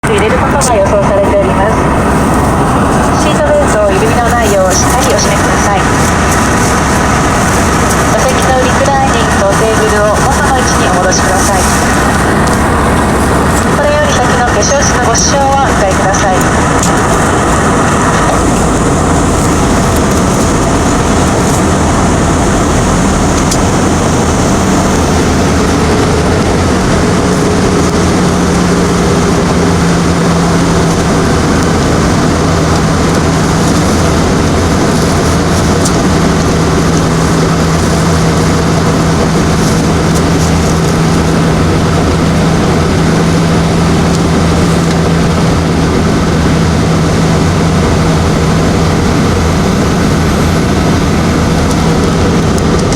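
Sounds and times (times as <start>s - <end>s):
airliner engines and airflow rush: 0.0s - 52.9s
steady low hum: 0.0s - 52.9s.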